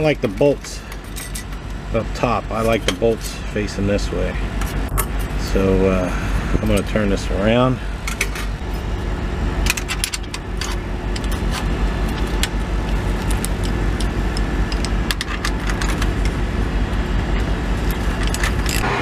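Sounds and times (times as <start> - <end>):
steady low hum: 0.0 - 19.0
metal clamp clinking: 0.9 - 1.6, 9.7 - 16.3, 17.9 - 18.8.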